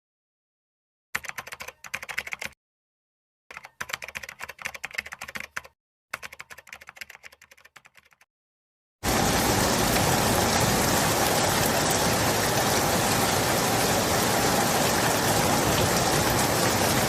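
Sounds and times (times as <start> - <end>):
keyboard typing clicks: 1.2 - 2.6, 3.5 - 8.3.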